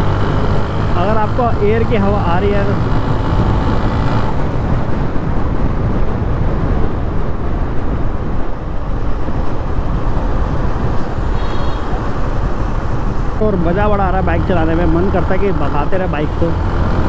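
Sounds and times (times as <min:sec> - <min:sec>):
motorcycle engine running: 0:00.0 - 0:05.2, 0:08.7 - 0:17.0
wind buffeting microphone: 0:00.0 - 0:17.0.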